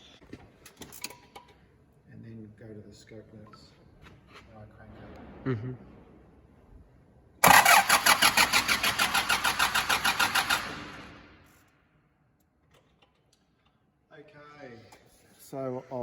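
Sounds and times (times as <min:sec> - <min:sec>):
diesel engine cranking on starter: 0:07.4 - 0:11.2
high-pitched starter motor whine: 0:07.4 - 0:11.2.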